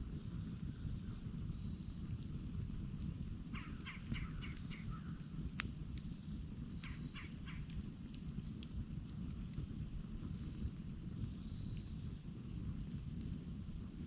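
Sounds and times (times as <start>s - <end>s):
campfire crackling: 0.0s - 14.0s
bird raspy calls: 3.5s - 5.2s, 6.8s - 7.8s.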